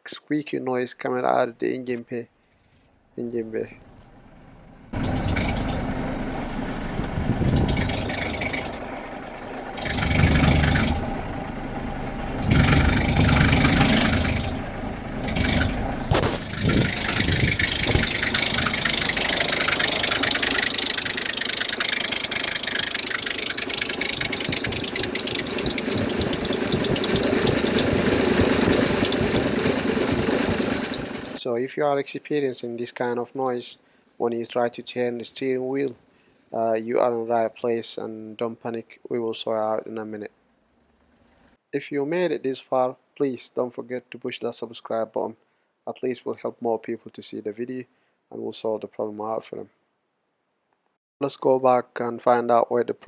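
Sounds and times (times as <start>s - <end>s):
diesel engine running: 3.7s - 31.4s
squeaking from engine bay: 3.7s - 31.4s.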